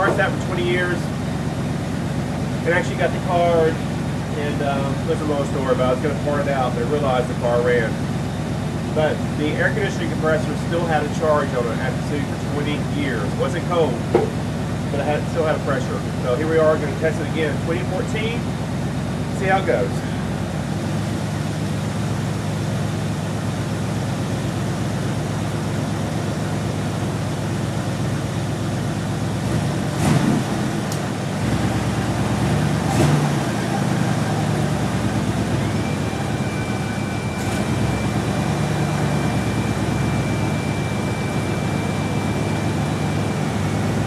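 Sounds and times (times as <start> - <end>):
car engine idling: 0.0 - 44.0
thin high whine: 33.5 - 44.0.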